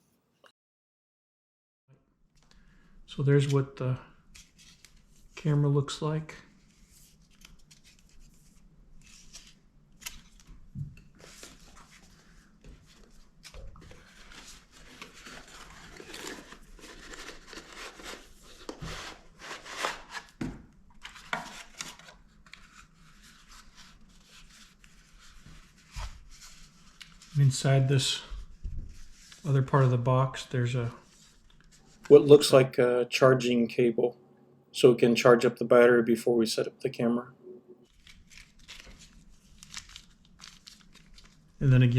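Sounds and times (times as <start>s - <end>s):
packaging rustling: 9.2s - 20.4s, 21.0s - 27.4s, 37.9s - 41.6s.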